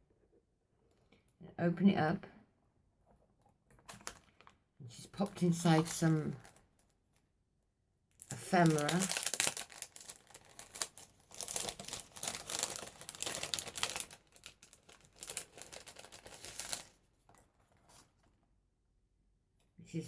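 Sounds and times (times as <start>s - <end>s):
paper rustling and crinkling: 8.5s - 18.3s.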